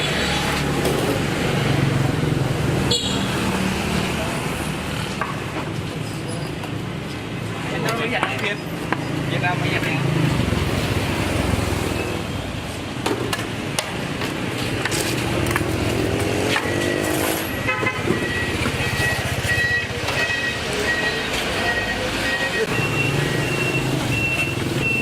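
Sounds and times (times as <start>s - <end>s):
vehicle engines passing: 0.0s - 25.0s
short electronic beeps: 18.1s - 25.0s
engine revving: 21.7s - 25.0s.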